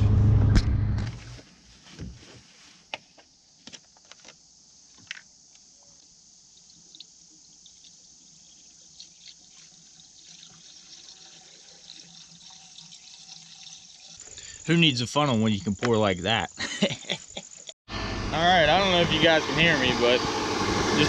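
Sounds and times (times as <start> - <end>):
liquid trickling into radiator: 6.6 - 14.7.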